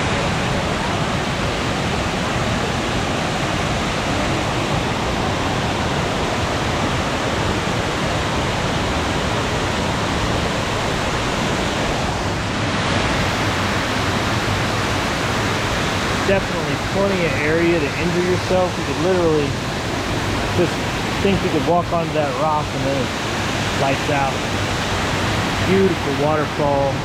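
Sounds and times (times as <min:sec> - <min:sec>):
waterfall roaring: 0:00.0 - 0:27.0.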